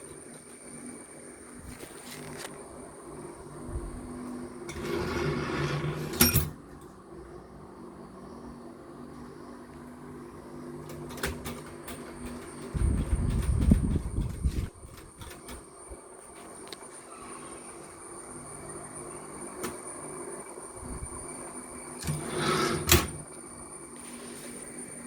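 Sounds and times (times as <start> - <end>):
typewriter carriage sliding: 4.7 - 6.6, 10.8 - 15.6, 22.0 - 23.2
typewriter keys clacking: 10.9 - 15.6.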